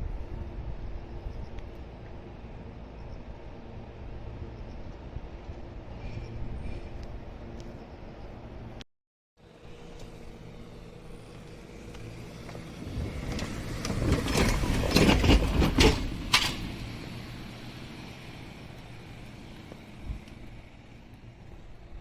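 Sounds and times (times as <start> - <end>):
electric train humming: 9.4 - 22.0
train wheels clanking over rail joints: 12.4 - 18.0.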